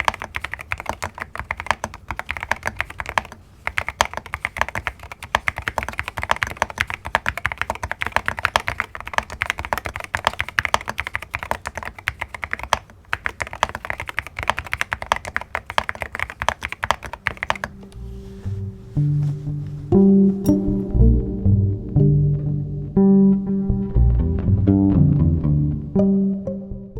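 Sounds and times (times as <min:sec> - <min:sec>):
mechanical keyboard typing: 0:00.0 - 0:17.9.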